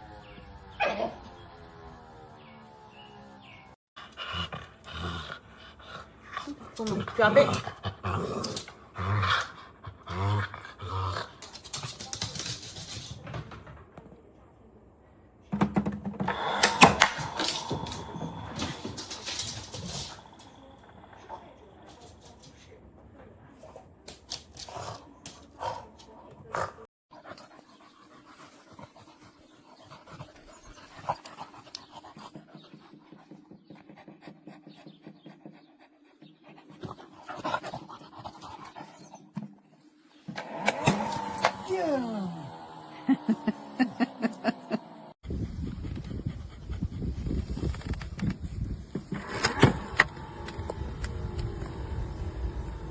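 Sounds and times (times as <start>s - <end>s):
dog growling: 4.1s - 11.6s, 16.3s - 22.4s, 40.3s - 45.2s
dog panting: 27.1s - 39.2s, 43.4s - 47.4s.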